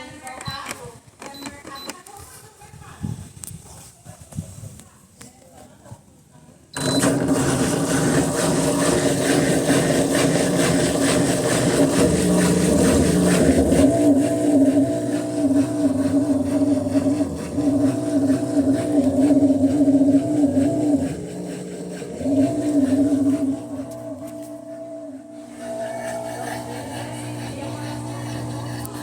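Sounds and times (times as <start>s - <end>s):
drain pump wavering hum: 6.8s - 29.0s.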